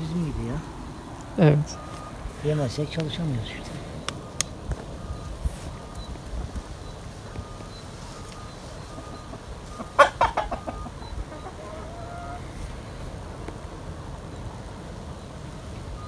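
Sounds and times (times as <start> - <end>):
chicken clucking: 7.4 - 15.3.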